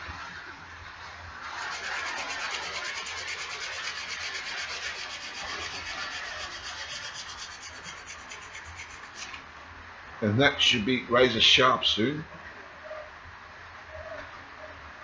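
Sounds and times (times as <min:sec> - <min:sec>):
sandpaper rubbing on steel blade: 0:01.4 - 0:09.4.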